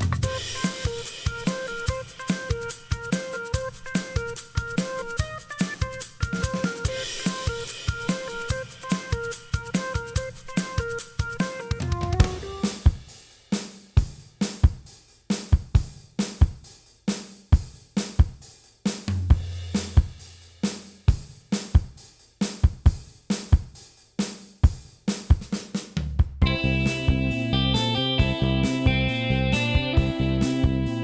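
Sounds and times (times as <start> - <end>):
drum kit beat: 0.0 - 31.0
pitched instruments playing: 0.2 - 12.8
held bass note: 26.4 - 31.0.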